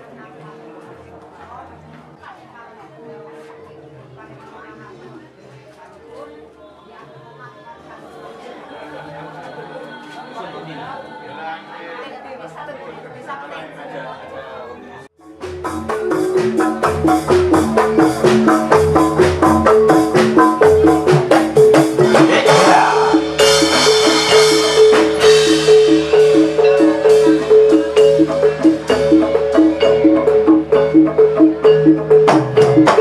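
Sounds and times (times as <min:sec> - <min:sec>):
gamelan metallophones playing: 0:15.2 - 0:33.0.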